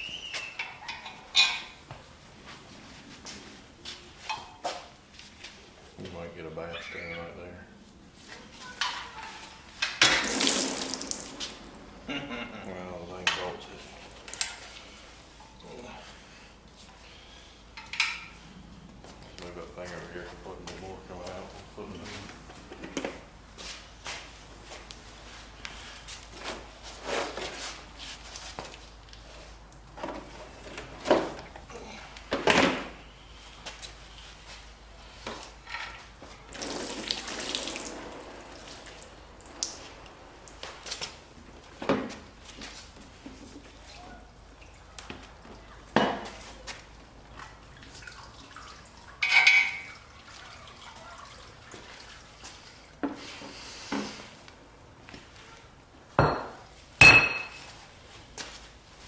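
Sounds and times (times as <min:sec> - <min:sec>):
scrapes and rustles of handling: 0:00.2 - 0:10.0, 0:18.0 - 0:36.5
metal tools clanking: 0:00.4 - 0:01.8, 0:49.2 - 0:49.9, 0:56.3 - 0:57.7.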